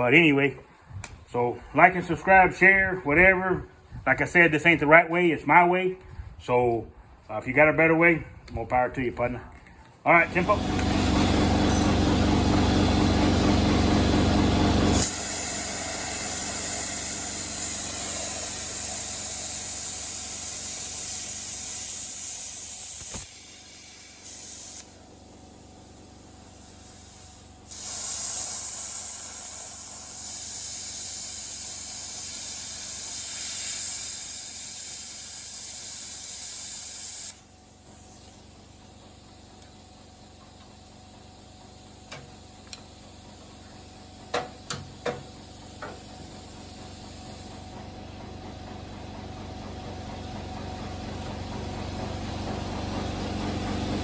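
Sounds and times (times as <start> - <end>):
arc welding crackle: 15.0 - 25.0, 25.6 - 41.2.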